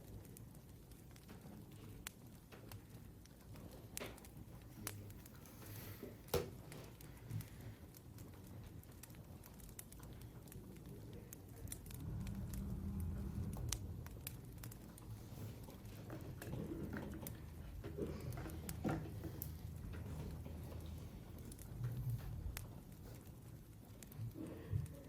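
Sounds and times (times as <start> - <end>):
light clicks and taps: 0.0 - 25.0
low hum: 11.4 - 25.0.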